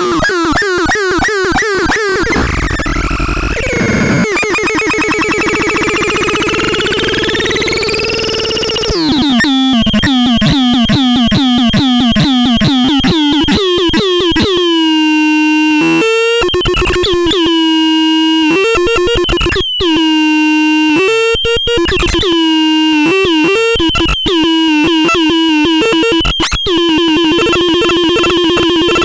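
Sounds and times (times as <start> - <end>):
buzzy synthesizer tone: 24.4 - 29.0.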